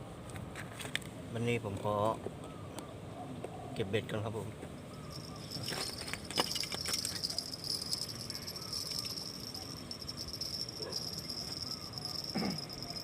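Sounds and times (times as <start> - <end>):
insects chirring: 4.8 - 13.0.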